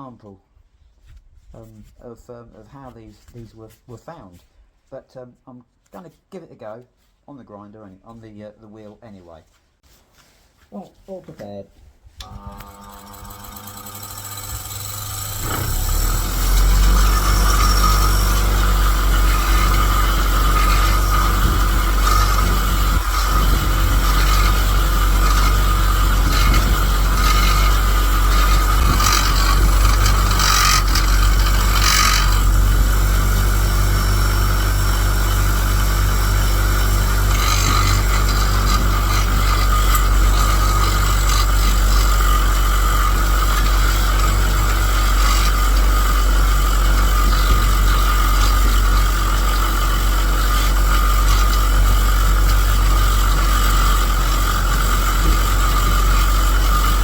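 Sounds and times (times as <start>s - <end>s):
grinder motor hum: 12.2s - 57.0s
wire wheel scraping metal: 12.2s - 57.0s.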